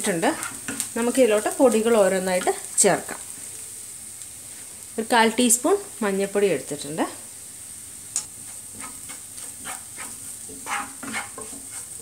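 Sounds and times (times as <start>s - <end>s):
spoon scraping pan: 0.0s - 2.7s, 8.2s - 12.0s
vegetables sizzling in oil: 0.0s - 12.0s.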